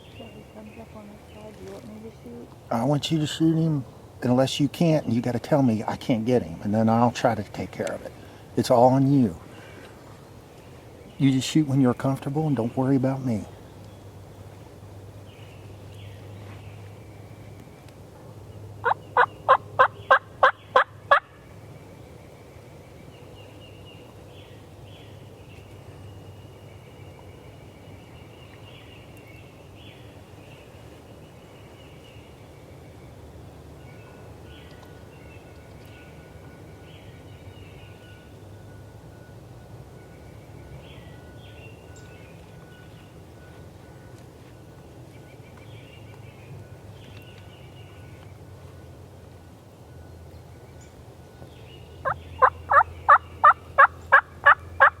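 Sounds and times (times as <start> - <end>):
wild turkey yelps: 18.8 - 21.3, 52.0 - 55.0.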